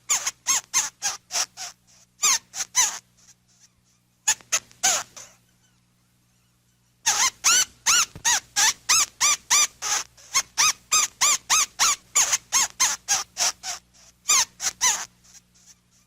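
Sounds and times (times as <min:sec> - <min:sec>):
monkey calling: 0:06.4 - 0:16.0.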